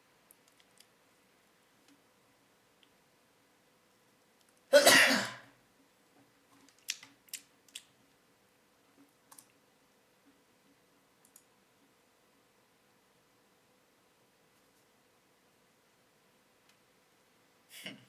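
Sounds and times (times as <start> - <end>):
person sneezing loudly: 4.7 - 5.5.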